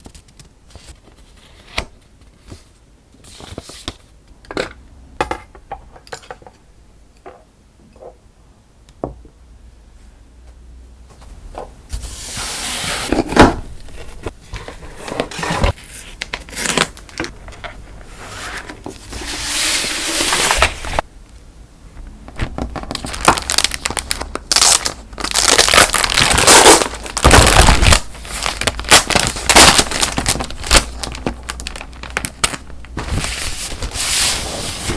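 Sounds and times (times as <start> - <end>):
paper crinkling and rustling: 13.0 - 21.0, 22.4 - 34.9.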